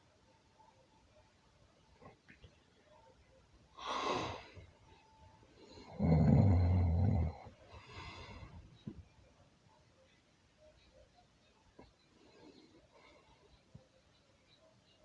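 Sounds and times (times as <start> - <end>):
breathing: 7.7 - 8.6.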